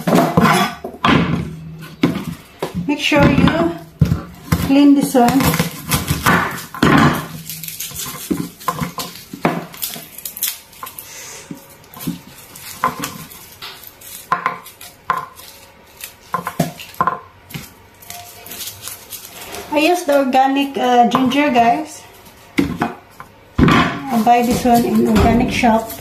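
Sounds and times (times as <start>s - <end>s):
dishes and utensils clattering: 0.0s - 2.4s, 23.6s - 26.0s.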